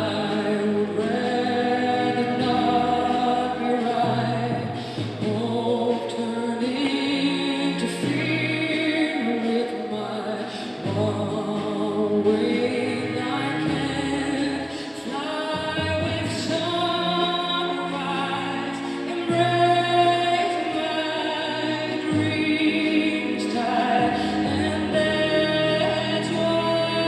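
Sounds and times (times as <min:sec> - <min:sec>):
bass notes: 0:00.0 - 0:09.1
backing voices: 0:00.0 - 0:27.0
woman singing lead: 0:00.0 - 0:27.0.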